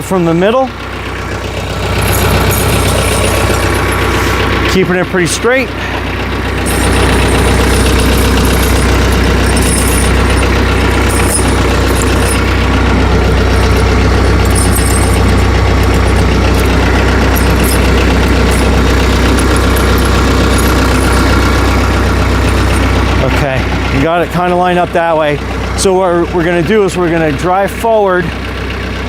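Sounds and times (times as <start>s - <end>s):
tractor engine idling: 0.0s - 29.0s.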